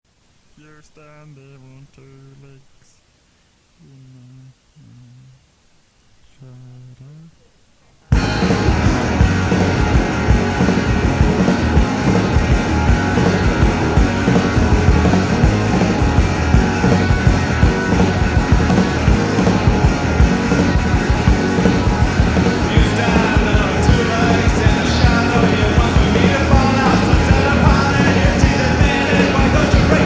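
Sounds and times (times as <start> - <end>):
bass guitar: 8.1 - 30.0
drums playing a steady beat: 8.1 - 30.0
electric guitar: 8.1 - 30.0.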